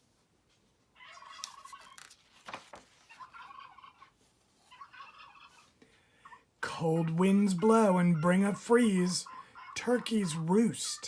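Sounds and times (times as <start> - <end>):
turkey gobbling: 3.1 - 6.4, 7.7 - 10.7.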